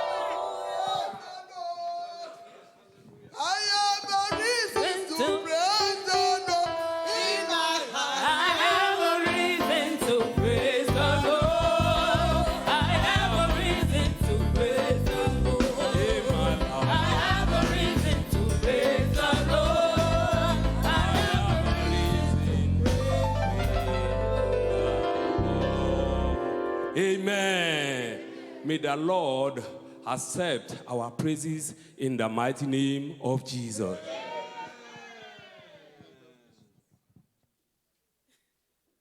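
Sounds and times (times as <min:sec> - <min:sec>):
gospel voices singing: 0:00.0 - 0:02.7, 0:03.4 - 0:36.2
heavy bass line: 0:10.4 - 0:26.4.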